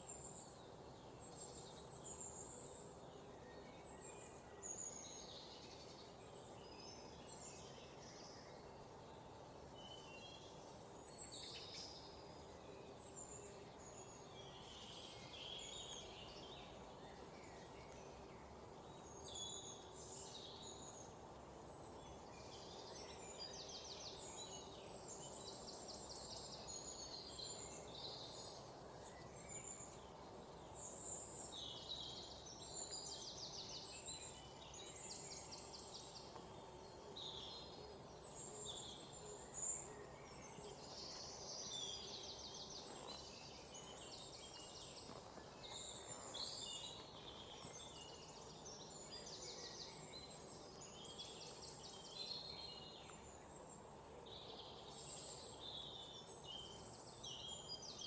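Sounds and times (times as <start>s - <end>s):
low steady background hiss: 0.0s - 58.0s
songbirds chirping and trilling: 0.0s - 58.0s.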